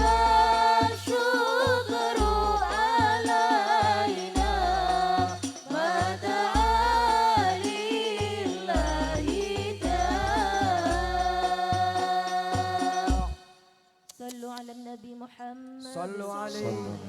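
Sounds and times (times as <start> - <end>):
instrumental backing with bass: 0.0 - 13.4
person singing devotional song: 0.0 - 17.0.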